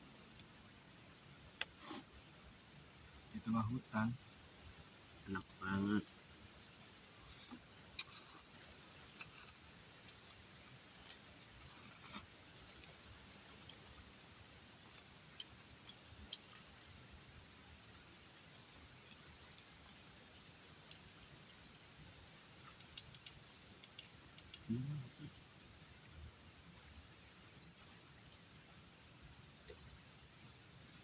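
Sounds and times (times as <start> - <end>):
crickets chirping: 0.0 - 31.0
faint clicks: 22.7 - 24.8.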